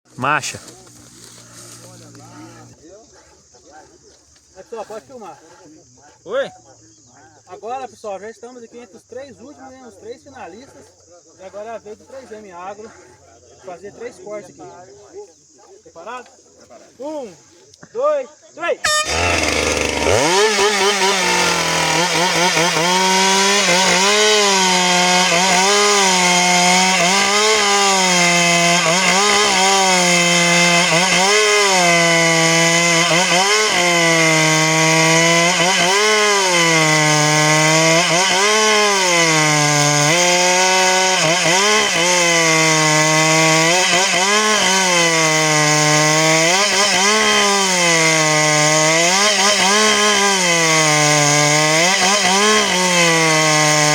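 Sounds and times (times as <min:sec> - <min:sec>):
chainsaw cutting through log: 0:00.1 - 0:03.5, 0:18.8 - 0:53.9.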